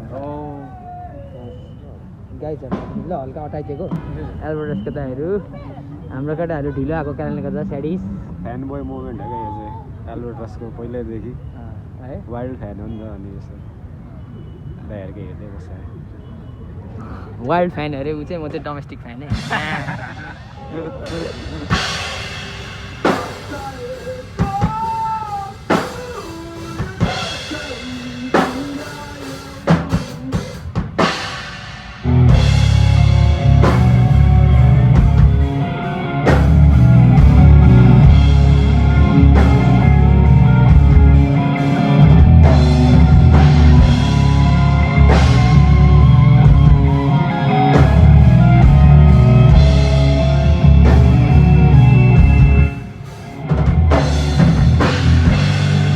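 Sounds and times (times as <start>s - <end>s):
rock band playing loud: 19.3s - 55.9s
guitar notes: 32.0s - 55.9s.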